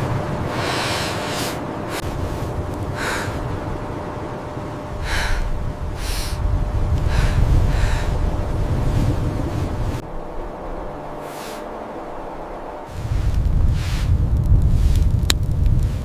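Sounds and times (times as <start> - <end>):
wind rumble on microphone: 0.0 - 16.0
short hissing bursts: 6.0 - 6.4.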